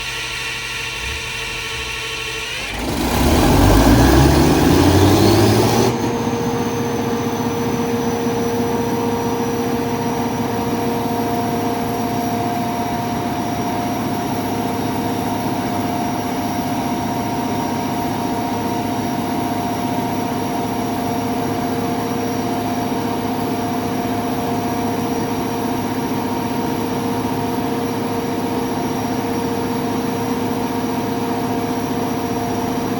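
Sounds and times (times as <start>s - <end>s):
diesel engine cranking and running: 0.1s - 14.4s
steady machine hum: 0.6s - 12.2s.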